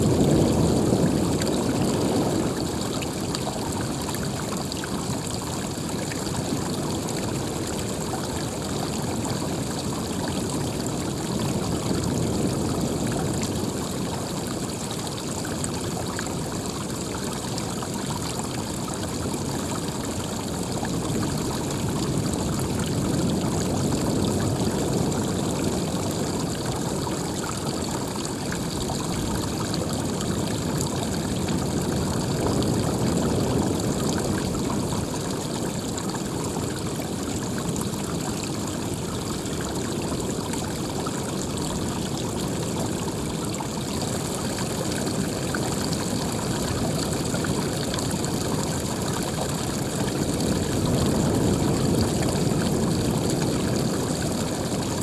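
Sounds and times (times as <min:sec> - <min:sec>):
running water rushing: 0:00.0 - 0:55.0.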